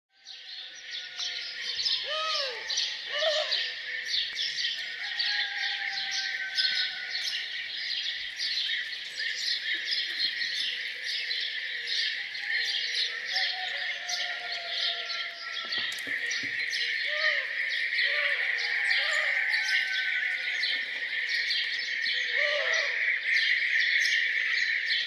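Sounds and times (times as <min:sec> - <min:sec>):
small birds chirping: 0:00.7 - 0:25.0
larger bird calling: 0:01.9 - 0:03.8, 0:13.4 - 0:21.0, 0:22.1 - 0:23.1.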